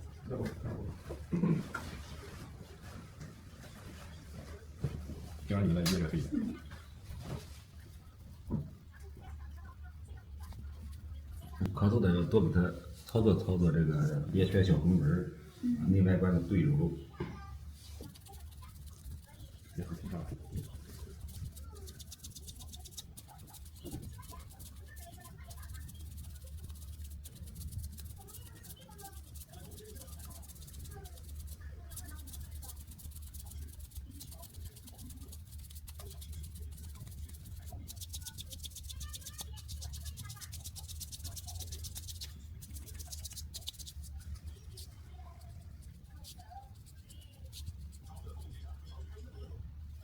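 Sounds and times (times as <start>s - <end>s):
hands rubbing on skin: 17.8s - 48.7s.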